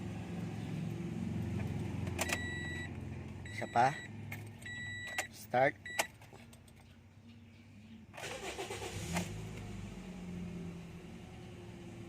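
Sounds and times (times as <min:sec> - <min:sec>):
car engine idling: 0:00.0 - 0:05.1
car engine cranking and starting: 0:01.3 - 0:05.2, 0:08.2 - 0:12.0.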